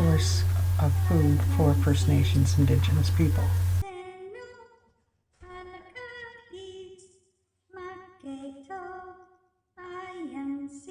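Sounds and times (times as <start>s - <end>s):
woman singing unaccompanied: 0.0s - 4.8s.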